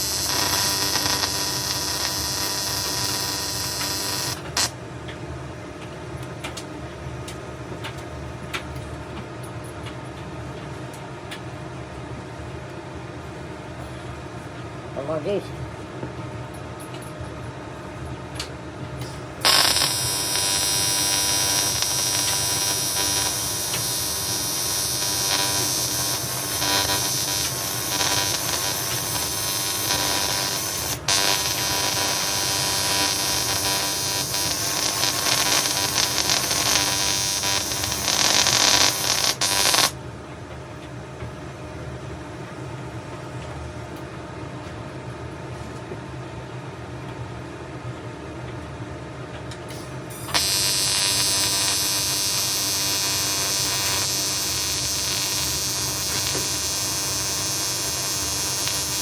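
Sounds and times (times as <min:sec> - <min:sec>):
welding arc buzzing: 0:00.0 - 0:04.8, 0:19.0 - 0:40.0, 0:49.7 - 0:59.0.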